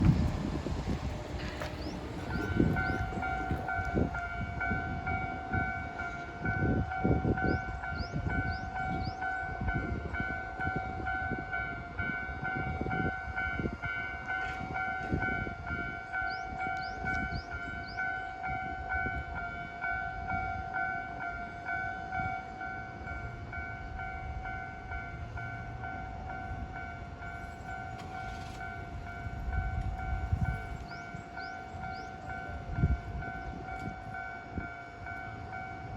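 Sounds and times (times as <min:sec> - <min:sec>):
train wheels clattering on rails: 0:00.0 - 0:04.5, 0:26.4 - 0:35.9.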